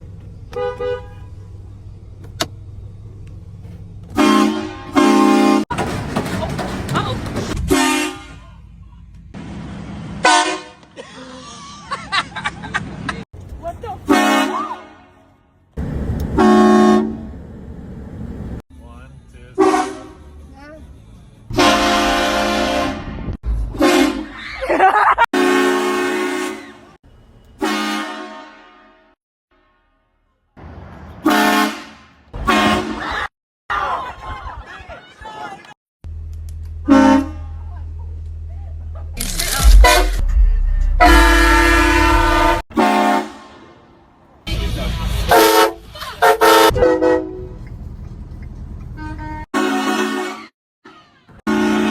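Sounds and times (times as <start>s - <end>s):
low engine hum: 0.0s - 5.0s
air horn chord blasts: 4.2s - 5.6s, 21.5s - 23.1s, 39.6s - 43.7s
train horn blasts: 4.2s - 5.6s, 7.7s - 8.4s, 10.2s - 10.8s, 14.1s - 15.1s, 16.4s - 17.3s, 19.6s - 20.3s, 21.5s - 23.1s, 23.8s - 24.3s, 25.4s - 26.8s, 27.6s - 29.9s, 31.3s - 33.0s, 36.8s - 37.5s, 41.0s - 43.8s, 45.3s - 47.6s, 49.0s - 50.5s, 51.5s - 51.9s.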